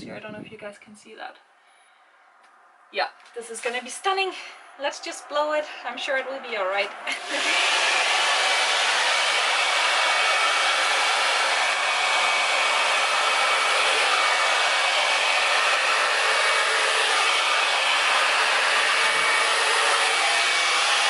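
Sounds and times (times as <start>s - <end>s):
hair dryer blowing: 6.6s - 21.0s.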